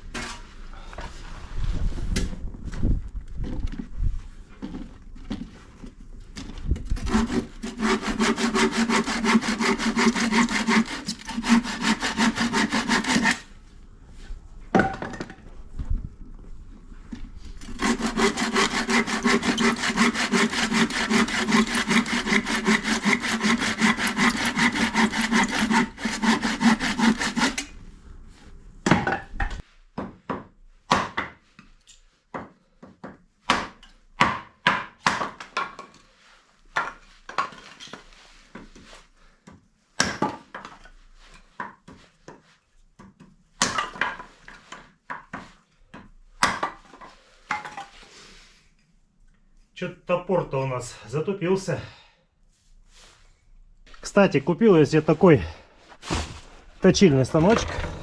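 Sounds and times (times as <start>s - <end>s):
firewood being sawn: 7.0s - 13.5s, 17.6s - 27.7s, 54.1s - 58.0s.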